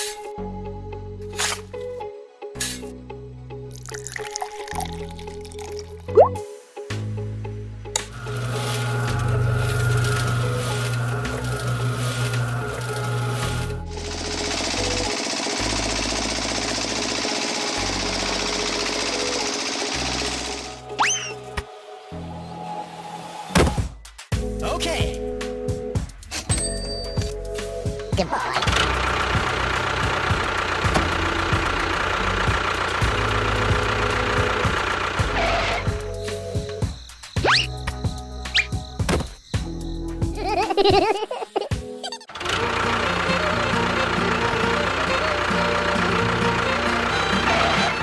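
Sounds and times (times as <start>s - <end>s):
small electric motor clattering: 8.0s - 20.8s, 28.5s - 36.8s
tractor engine chugging: 8.0s - 20.8s, 26.5s - 40.6s, 42.4s - 48.0s.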